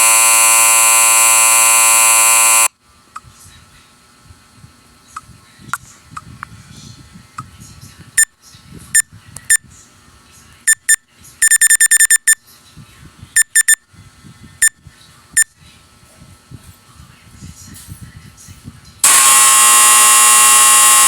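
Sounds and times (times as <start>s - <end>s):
scoreboard buzzer beeps: 0.0s - 2.7s, 10.7s - 12.4s, 13.4s - 13.8s, 19.0s - 21.0s.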